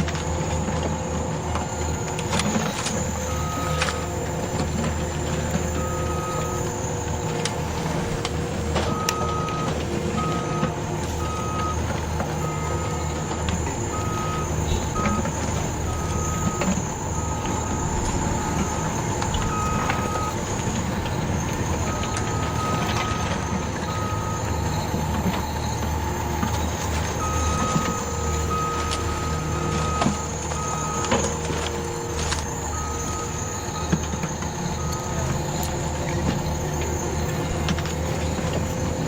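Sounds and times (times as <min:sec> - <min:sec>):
toy bulldozer motor hum: 0:00.0 - 0:39.0
electronic beeping: 0:08.9 - 0:31.6.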